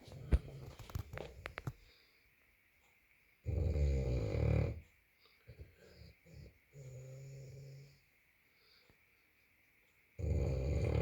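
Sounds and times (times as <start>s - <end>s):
dog snoring loudly: 3.4s - 4.8s, 6.2s - 8.0s, 10.2s - 11.0s
dog snorting: 10.2s - 11.0s.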